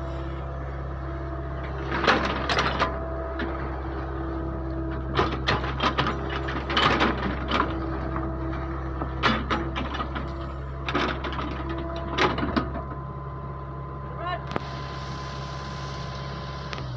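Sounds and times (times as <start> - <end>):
backhoe engine running: 0.0 - 16.9
bucket clunks and clatters: 5.0 - 12.8.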